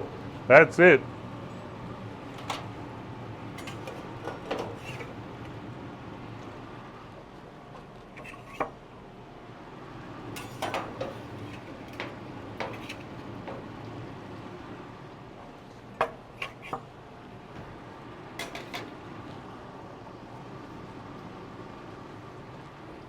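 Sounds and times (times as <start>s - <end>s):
spatulas scraping on griddle: 3.6s - 5.2s, 8.2s - 8.6s, 10.4s - 13.5s.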